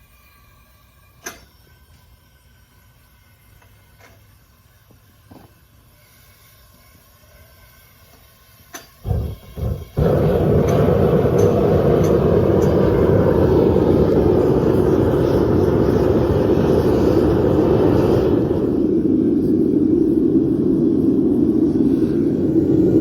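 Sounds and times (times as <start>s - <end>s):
furnace burner rushing: 8.7s - 23.0s.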